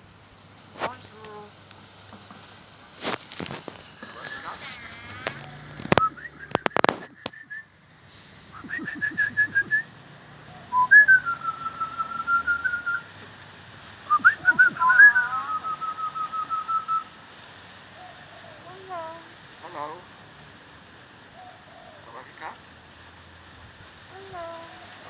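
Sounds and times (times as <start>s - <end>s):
myna birds whistling: 3.8s - 13.1s, 14.1s - 17.2s.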